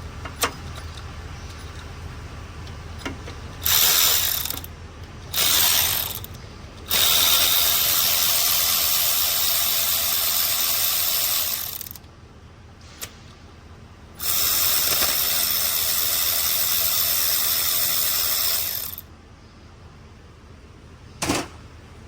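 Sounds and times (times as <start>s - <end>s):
electric ratchet spinning: 3.6s - 4.7s, 5.3s - 12.0s, 14.2s - 19.1s.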